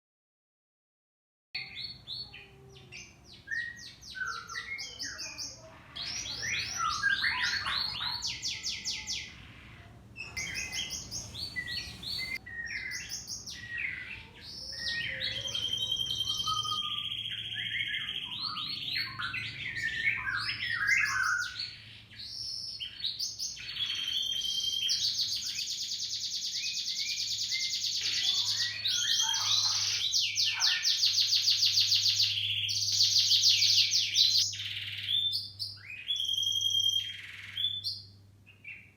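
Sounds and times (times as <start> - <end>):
canary singing trills: 1.6 - 38.9.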